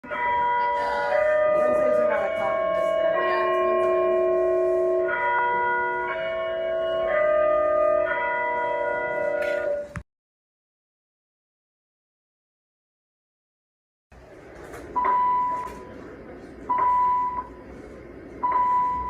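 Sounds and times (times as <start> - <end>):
school bell chime tune: 0.0 - 9.9.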